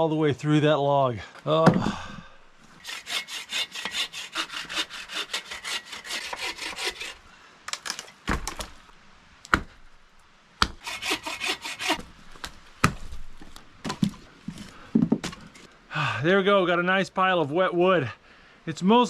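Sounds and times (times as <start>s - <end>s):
hand saw cutting log: 2.8s - 7.2s, 10.6s - 12.0s.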